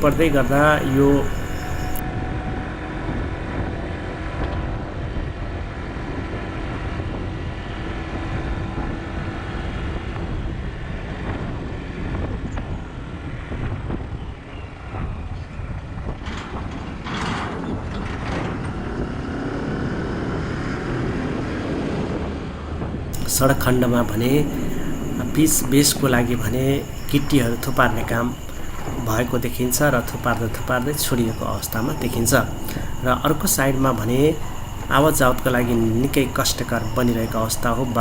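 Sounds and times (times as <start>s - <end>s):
vehicle engine and road rumble: 0.0s - 2.0s
wind on microphone: 4.6s - 38.0s.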